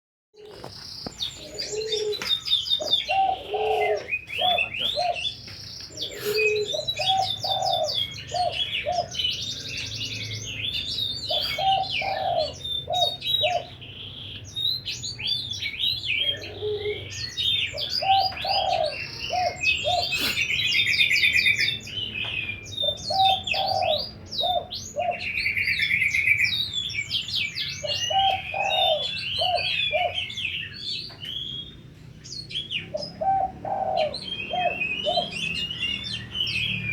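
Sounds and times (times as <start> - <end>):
dove cooing: 0.4 - 9.9, 10.8 - 13.8, 16.1 - 21.6, 22.8 - 25.4, 27.8 - 30.4, 32.9 - 35.7
small birds chirping: 0.4 - 36.9.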